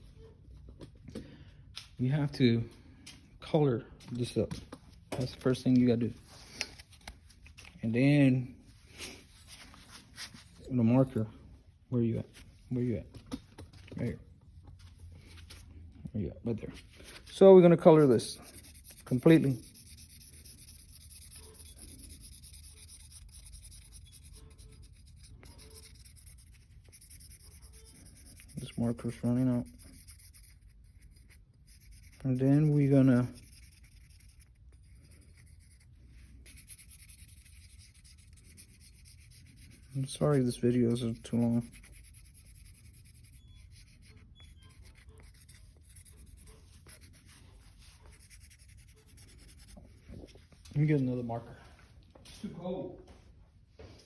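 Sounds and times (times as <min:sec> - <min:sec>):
marker scratching on metal: 0:16.8 - 0:50.5.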